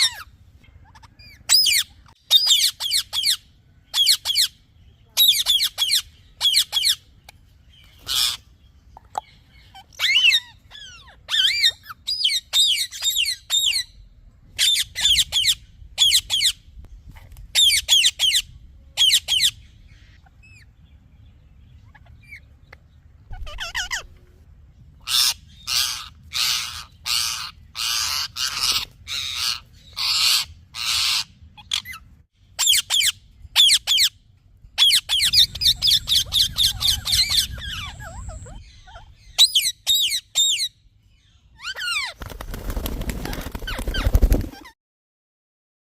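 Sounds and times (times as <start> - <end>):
parrot chirping and squawking: 0.0 - 4.6, 5.2 - 14.0, 14.6 - 16.6, 21.7 - 24.2, 25.0 - 40.8, 41.6 - 42.2.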